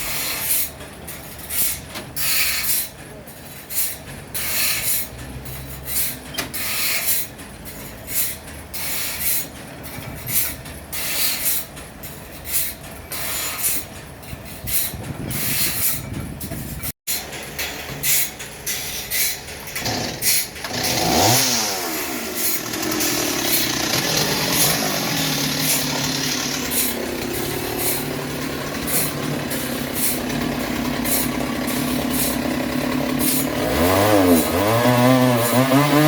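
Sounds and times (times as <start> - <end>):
hissing bursts: 20.1 - 28.2.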